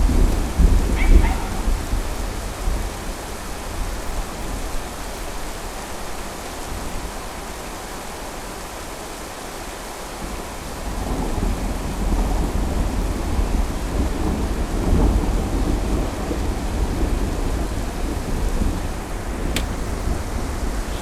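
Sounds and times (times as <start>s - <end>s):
steady rain: 0.0s - 21.0s
rolling thunder: 10.9s - 21.0s.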